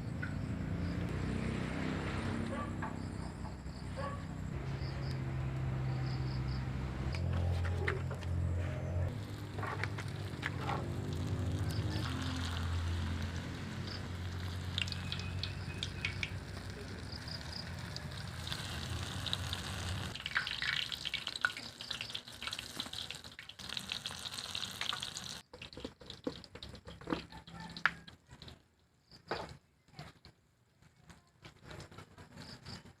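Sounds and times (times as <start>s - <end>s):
food sizzling in hot oil: 9.2s - 25.5s.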